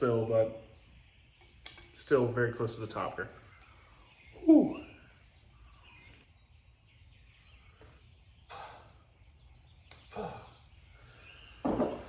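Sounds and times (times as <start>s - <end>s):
weak bird chirps: 0.0s - 12.0s.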